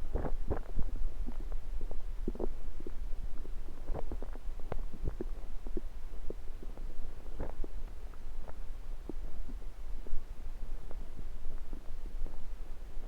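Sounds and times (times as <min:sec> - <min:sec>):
stomach gurgling and squeaking: 0:00.0 - 0:10.2
deep stomach rumble: 0:00.0 - 0:13.0.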